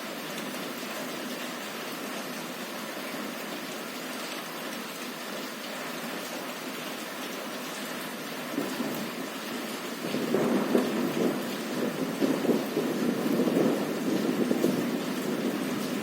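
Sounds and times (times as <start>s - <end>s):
heavy rain on a window: 0.0s - 16.0s.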